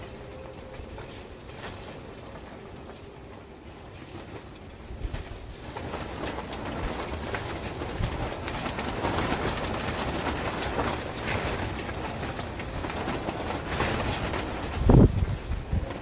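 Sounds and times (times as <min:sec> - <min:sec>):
gusty wind on microphone: 0:04.7 - 0:16.0.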